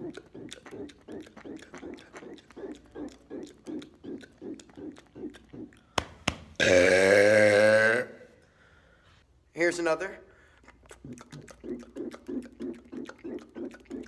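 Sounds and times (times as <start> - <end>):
man gulping air: 0.0 - 7.7, 10.6 - 14.0
man burping: 6.6 - 8.3.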